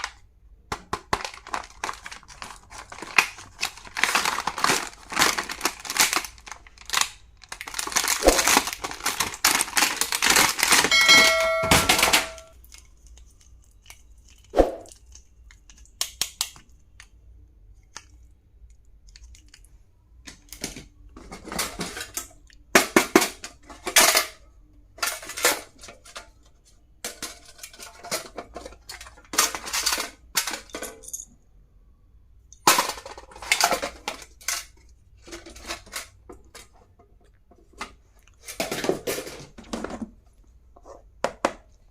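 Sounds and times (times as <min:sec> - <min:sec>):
packaging crinkling and rustling: 0:00.0 - 0:17.1
clicks taps and clinks of items: 0:10.2 - 0:14.0
short ringing note: 0:10.9 - 0:12.5.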